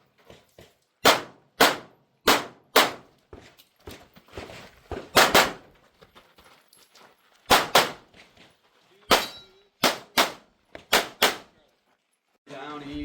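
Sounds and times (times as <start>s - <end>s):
pistol shots: 1.0s - 3.1s, 5.1s - 5.6s, 7.5s - 8.0s, 9.1s - 11.5s.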